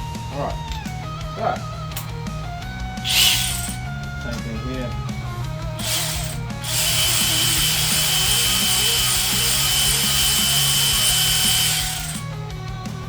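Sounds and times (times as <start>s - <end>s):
power tool running: 2.9s - 4.2s, 5.5s - 12.7s.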